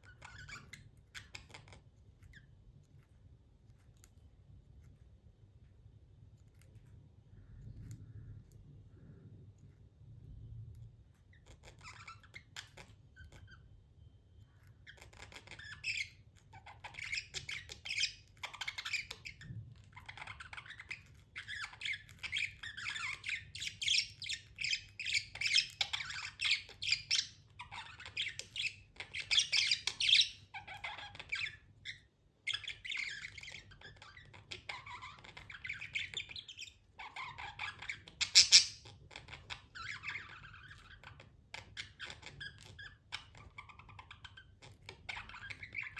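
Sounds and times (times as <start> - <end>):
budgerigars chirping: 14.9 - 45.9.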